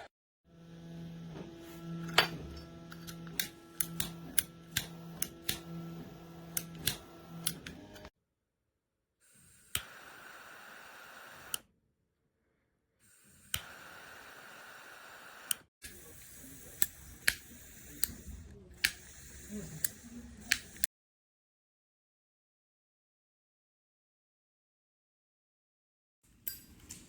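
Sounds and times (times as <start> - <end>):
sharp clicks: 3.0 - 5.7
torch lighter hissing: 3.0 - 5.7, 9.3 - 11.6, 13.0 - 20.9.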